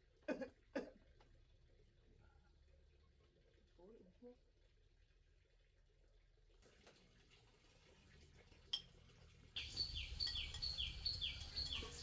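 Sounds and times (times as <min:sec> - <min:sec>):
bird chirping: 0:09.6 - 0:12.0.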